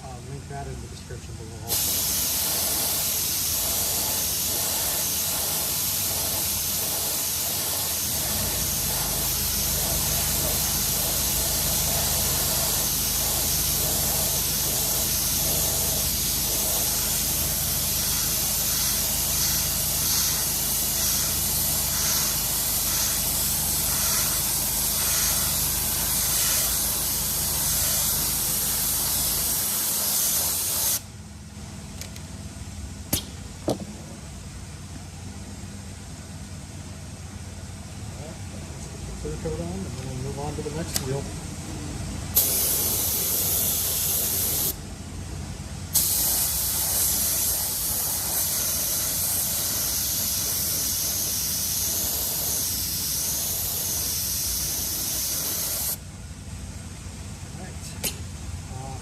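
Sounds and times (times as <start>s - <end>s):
spray paint hissing: 1.7s - 31.1s, 42.3s - 44.8s, 45.9s - 56.0s.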